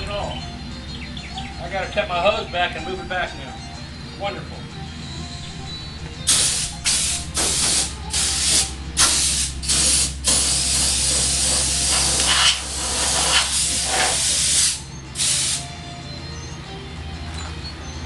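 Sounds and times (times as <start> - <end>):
compressed air blow gun blasts: 6.3 - 15.6.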